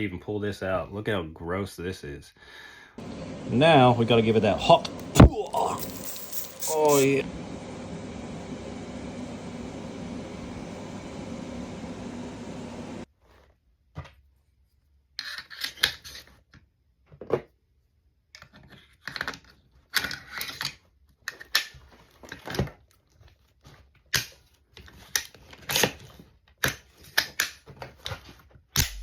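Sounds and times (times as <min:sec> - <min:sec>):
steady rushing hiss: 0:03.0 - 0:13.1
metal parts clicking and scraping: 0:05.2 - 0:07.2.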